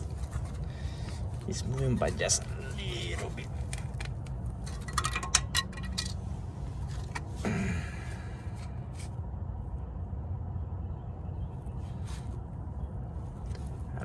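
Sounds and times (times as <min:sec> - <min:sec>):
metal parts clicking: 0:00.0 - 0:06.2
brake caliper scraping: 0:00.0 - 0:09.1
steady low rumble: 0:00.0 - 0:14.0.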